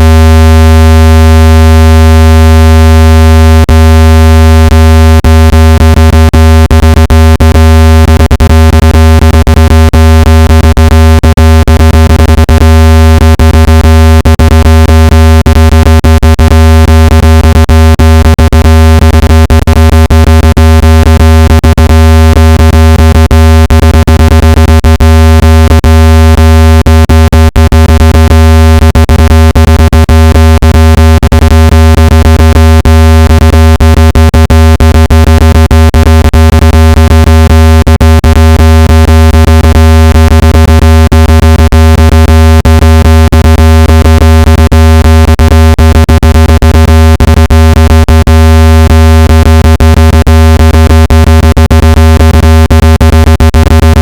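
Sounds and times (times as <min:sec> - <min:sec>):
low buzzing speaker tone: 0:00.0 - 0:54.0.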